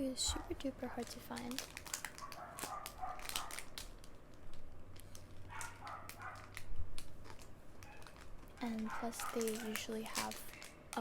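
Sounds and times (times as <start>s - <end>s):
plastic packaging crinkling: 0.4s - 11.0s
dogs barking: 2.2s - 3.7s, 5.5s - 6.6s, 8.8s - 9.8s.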